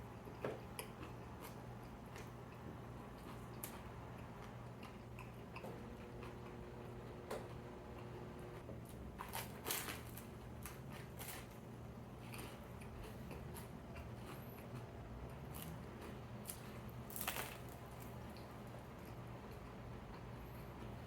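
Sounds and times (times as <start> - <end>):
steady low hum: 0.0 - 21.0
chewing and mouth clicks: 0.2 - 6.4
crunchy bites: 15.5 - 18.2.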